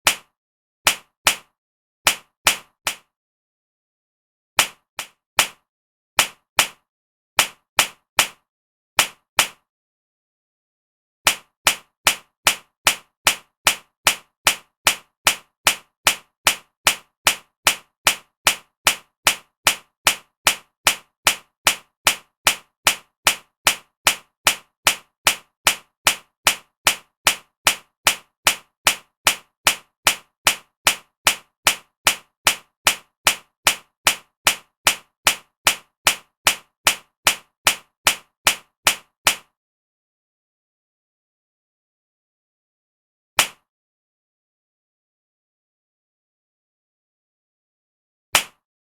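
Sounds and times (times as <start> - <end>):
slap sound effect: 0.0 - 0.3, 0.9 - 1.5, 2.1 - 3.0, 4.6 - 5.6, 6.2 - 6.8, 7.4 - 8.4, 9.0 - 9.6, 11.3 - 39.5, 43.4 - 43.6, 48.4 - 48.6.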